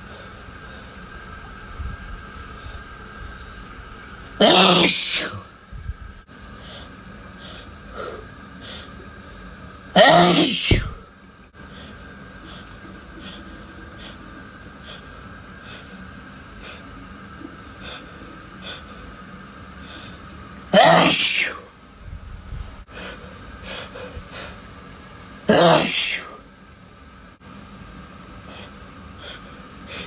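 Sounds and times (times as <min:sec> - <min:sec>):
loud sneeze: 0:04.4 - 0:05.5, 0:10.0 - 0:11.0, 0:20.7 - 0:21.7, 0:25.5 - 0:26.4.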